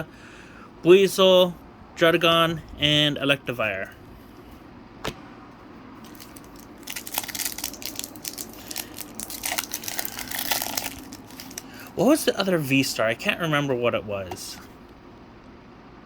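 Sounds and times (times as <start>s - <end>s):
foil wrapper crinkling and tearing: 6.0s - 12.2s.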